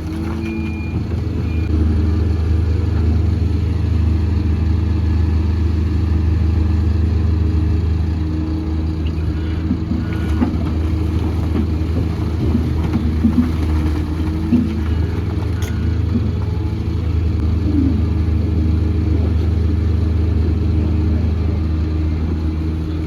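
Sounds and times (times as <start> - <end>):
knocks and clanks: 0.0 - 1.7, 9.5 - 17.4
heavy diesel engine under load: 0.0 - 23.0.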